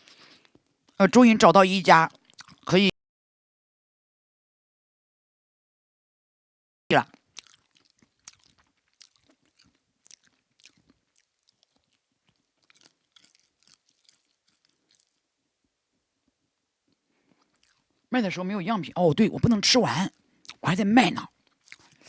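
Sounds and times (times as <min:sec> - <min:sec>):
person chewing crunchy food: 0:00.0 - 0:01.0, 0:02.1 - 0:02.7, 0:07.1 - 0:15.3, 0:16.9 - 0:18.1, 0:20.1 - 0:22.0.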